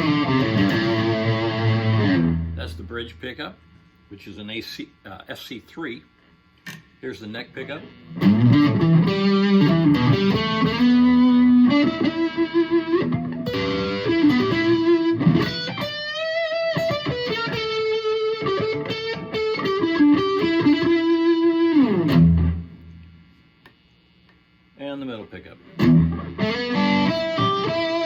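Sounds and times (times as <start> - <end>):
overdriven electric guitar lead: 0.0 - 3.1, 7.6 - 23.1, 25.6 - 28.0.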